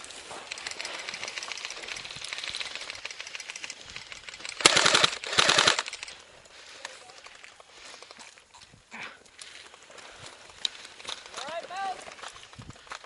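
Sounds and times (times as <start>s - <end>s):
airsoft guns firing full auto: 0.5s - 6.1s.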